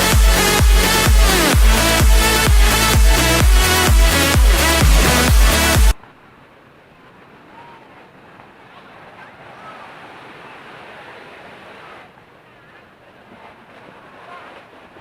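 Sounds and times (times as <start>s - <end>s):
electronic dance music: 0.0s - 6.0s.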